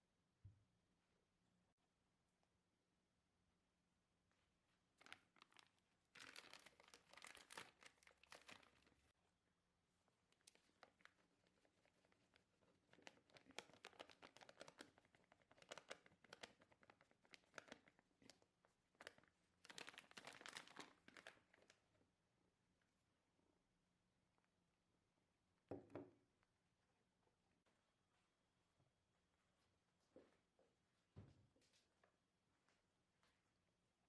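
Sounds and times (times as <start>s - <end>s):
packaging crinkling and tearing: 5.0s - 9.1s, 10.4s - 18.4s, 19.0s - 21.8s.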